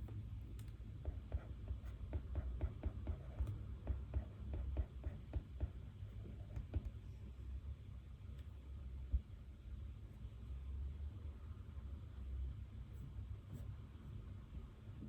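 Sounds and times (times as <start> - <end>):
low room hum: 0.0 - 15.0
light irregular clicks and taps: 0.1 - 1.2.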